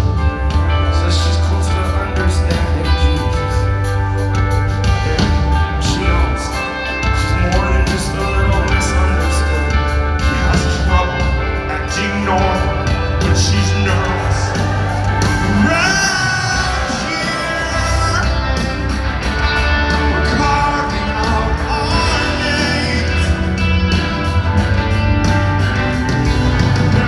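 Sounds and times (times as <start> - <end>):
bass: 0.0 - 27.0
drums: 0.0 - 27.0
keyboards or guitars: 0.0 - 27.0
male lead vocal singing: 0.1 - 3.8, 4.9 - 24.4, 26.4 - 27.0.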